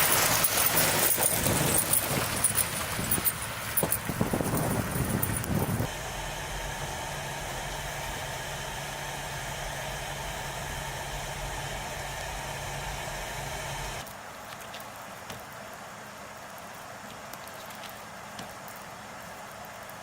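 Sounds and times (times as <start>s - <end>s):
loud irregular rumble: 0.0s - 14.0s
engine idling: 0.0s - 14.1s.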